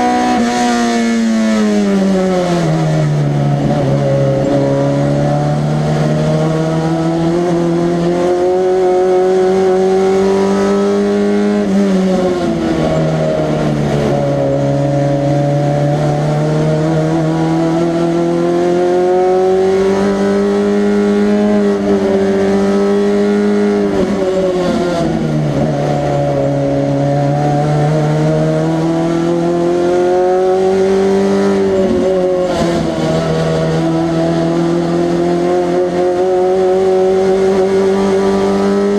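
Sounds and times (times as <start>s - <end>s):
race car engine revving: 0.0s - 38.9s.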